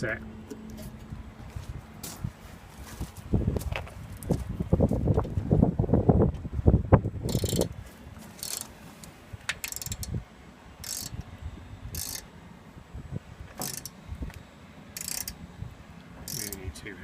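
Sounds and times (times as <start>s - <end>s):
rivnut tool ratcheting: 7.3s - 7.7s, 8.4s - 8.7s, 9.6s - 10.2s, 10.8s - 11.2s, 11.9s - 12.3s, 13.6s - 14.0s, 15.0s - 15.4s, 16.2s - 16.7s.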